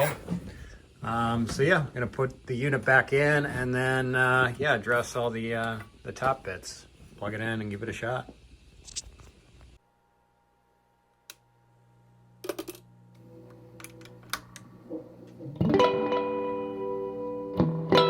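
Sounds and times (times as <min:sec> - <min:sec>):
steady amplifier hum: 0:00.0 - 0:17.6
electric guitar notes and chords: 0:13.3 - 0:18.0.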